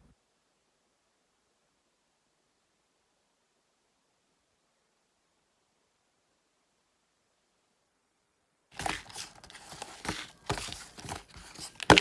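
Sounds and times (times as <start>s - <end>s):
crinkling rustling handling noise: 8.7s - 12.0s.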